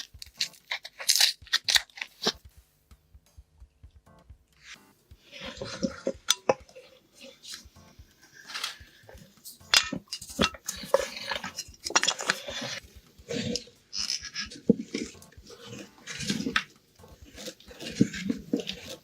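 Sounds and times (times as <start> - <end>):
hard objects clinking and clattering: 5.4 - 7.9, 8.5 - 19.0.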